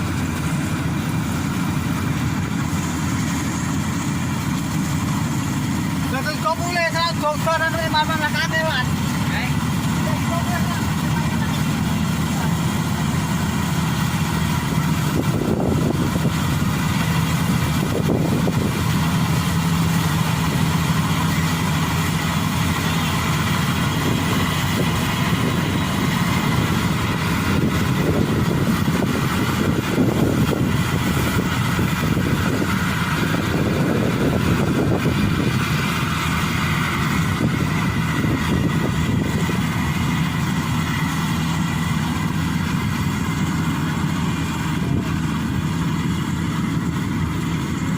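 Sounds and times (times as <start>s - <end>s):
combine harvester engine hum: 0.0s - 47.9s.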